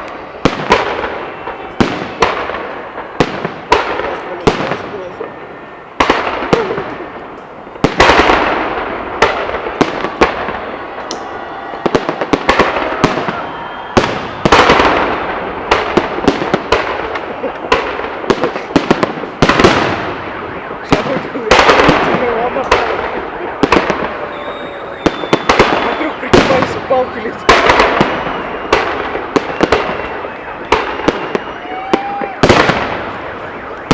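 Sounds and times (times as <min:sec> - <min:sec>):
firework bangs: 0:00.0 - 0:33.9
firework crackle and echo: 0:00.0 - 0:33.9.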